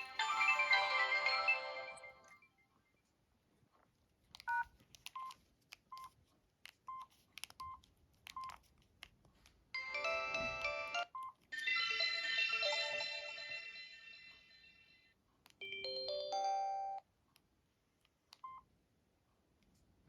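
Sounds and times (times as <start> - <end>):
phone melody tone: 0.0 - 2.4, 9.8 - 14.4
phone keypad beeps: 4.5 - 5.4.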